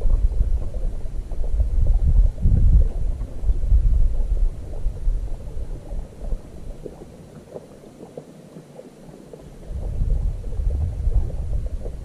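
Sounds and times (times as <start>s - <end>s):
wind buffeting microphone: 0.0s - 7.0s, 9.6s - 12.0s
water lapping on boat: 0.0s - 12.0s.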